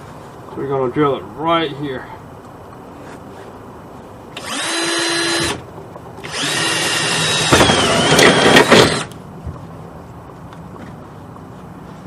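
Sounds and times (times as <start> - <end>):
electric drill whining: 4.4 - 5.6, 6.2 - 9.2.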